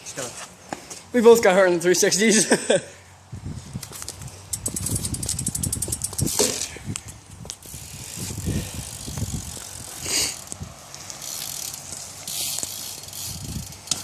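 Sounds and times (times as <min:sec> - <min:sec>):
bike tyres rolling and scuffing: 0:00.0 - 0:01.6, 0:03.4 - 0:14.0
bike frame rattling: 0:03.8 - 0:14.0.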